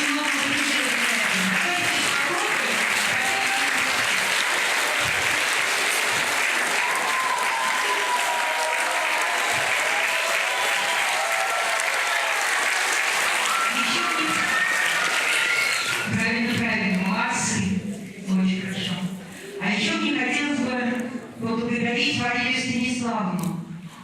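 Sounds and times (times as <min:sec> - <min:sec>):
audience applauding: 0:00.0 - 0:16.2.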